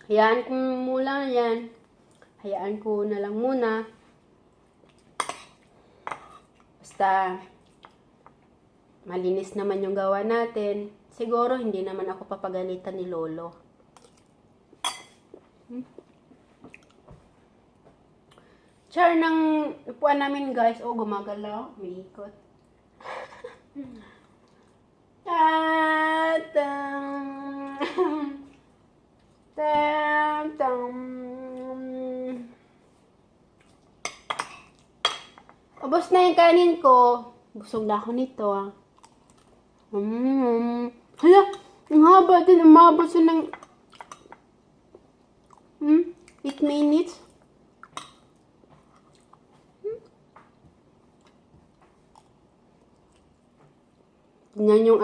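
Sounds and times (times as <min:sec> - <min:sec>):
person chewing food: 0:14.0 - 0:17.1, 0:38.9 - 0:39.9, 0:43.9 - 0:46.4, 0:47.3 - 0:54.6.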